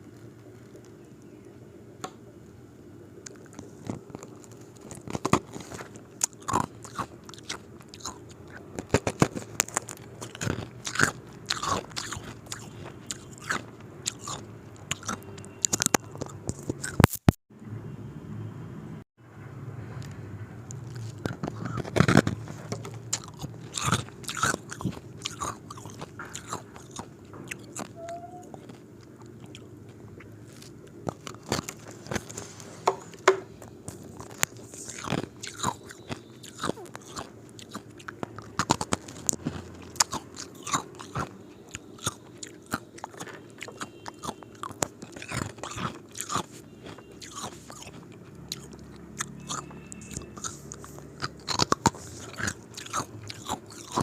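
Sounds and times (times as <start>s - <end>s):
ice cubes crunching in teeth: 3.3s - 17.4s, 20.7s - 22.4s, 23.0s - 27.9s, 30.3s - 32.3s, 33.9s - 54.0s.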